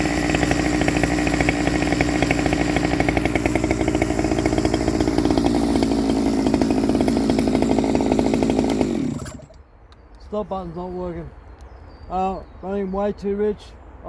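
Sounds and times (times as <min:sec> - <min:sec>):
chainsaw running: 0:00.0 - 0:09.6.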